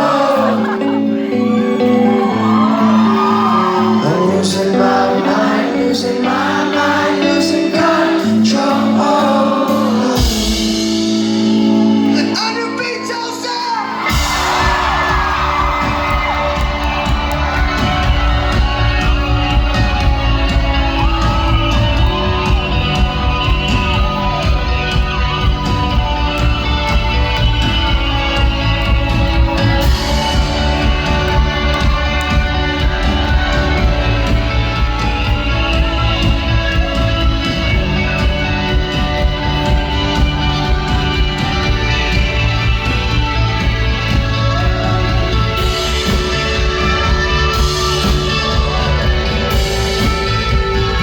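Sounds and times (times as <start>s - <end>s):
person singing: 0.0s - 11.1s
drums: 0.0s - 51.0s
rock band playing live: 0.0s - 51.0s.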